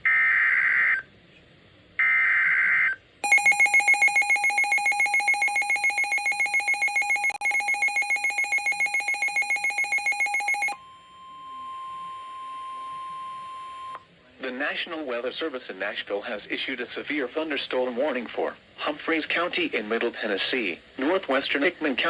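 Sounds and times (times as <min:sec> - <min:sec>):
pulsing electronic alert tone: 0:03.2 - 0:10.8
screeching digital header tones: 0:03.2 - 0:10.8
steady warning alarm tone: 0:03.2 - 0:14.0.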